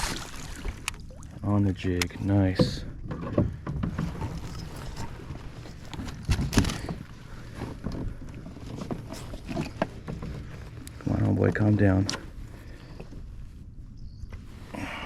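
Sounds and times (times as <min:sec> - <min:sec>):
handling knocks and clatter: 0:01.8 - 0:13.2.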